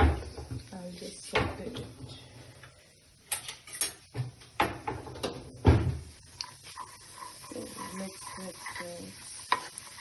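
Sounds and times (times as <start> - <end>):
utensil scraping and knocking a pan: 4.1 - 10.0.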